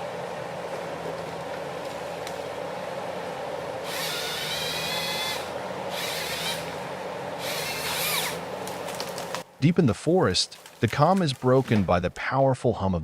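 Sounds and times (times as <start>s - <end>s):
diesel engine running: 0.0s - 10.5s
high-pitched machine whines: 3.8s - 8.5s.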